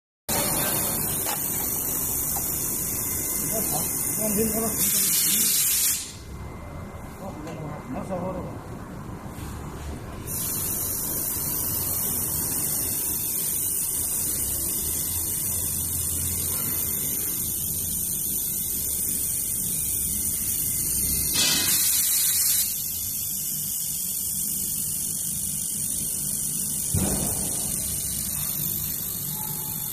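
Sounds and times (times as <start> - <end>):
laser welder high hiss: 0.3 - 6.3, 10.3 - 29.9
low electrical hum: 6.0 - 29.9.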